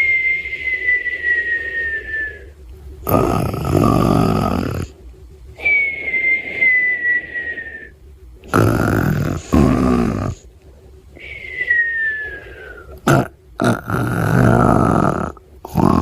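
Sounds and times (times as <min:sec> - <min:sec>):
cartoon rasping snore: 0:03.0 - 0:04.9, 0:08.5 - 0:10.4, 0:13.0 - 0:16.0.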